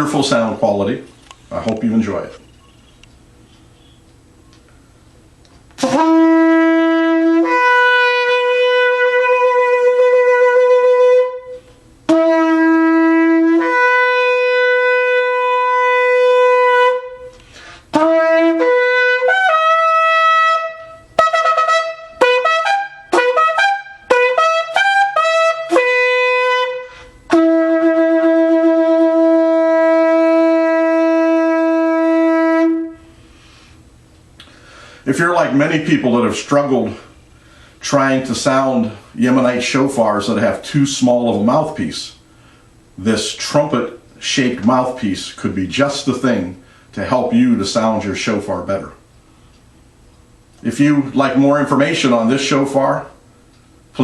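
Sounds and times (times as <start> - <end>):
shofar blasts: 5.8 - 33.2.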